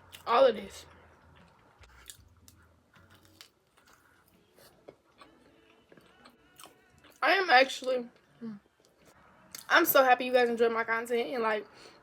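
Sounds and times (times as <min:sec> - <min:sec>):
faint chewing of food: 0:01.0 - 0:07.2.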